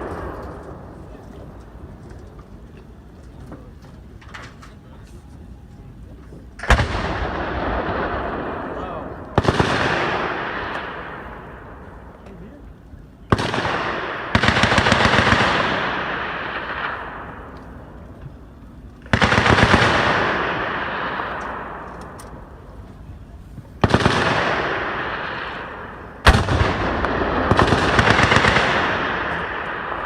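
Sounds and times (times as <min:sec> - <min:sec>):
machine-gun bursts with echo: 0:13.4 - 0:17.0, 0:19.1 - 0:21.5, 0:26.3 - 0:30.0.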